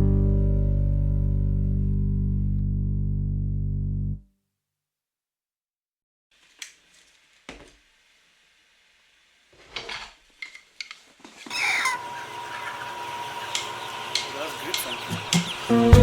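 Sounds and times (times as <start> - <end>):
music: 0.0 - 4.2, 15.6 - 16.0.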